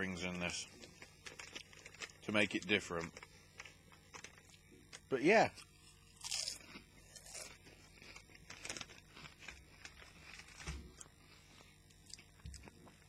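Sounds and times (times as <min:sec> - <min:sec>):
crisps crunching while chewed: 0:00.8 - 0:13.0.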